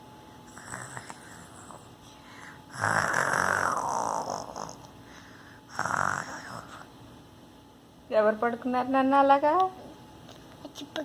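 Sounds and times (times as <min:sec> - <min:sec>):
child fake snoring: 0:00.5 - 0:01.9, 0:02.7 - 0:04.9, 0:05.7 - 0:06.9.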